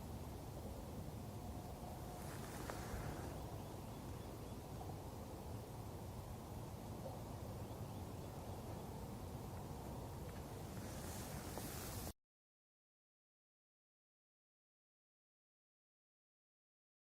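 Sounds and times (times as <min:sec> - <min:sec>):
low outdoor rumble: 0:00.0 - 0:12.1
brief rustle: 0:02.2 - 0:03.4, 0:10.3 - 0:12.1.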